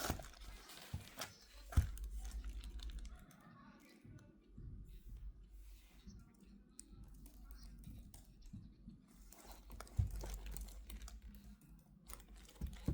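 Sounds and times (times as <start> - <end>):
packaging rustling: 0.0 - 3.3, 9.4 - 11.4, 12.1 - 12.9.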